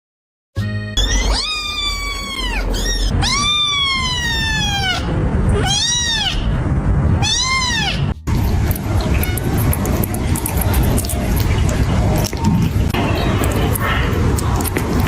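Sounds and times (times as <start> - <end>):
cat yowling: 1.0 - 6.6, 7.2 - 8.2.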